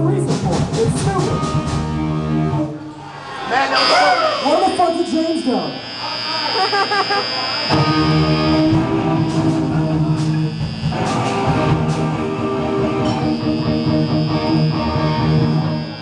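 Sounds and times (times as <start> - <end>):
electric guitar playing: 1.0 - 16.0.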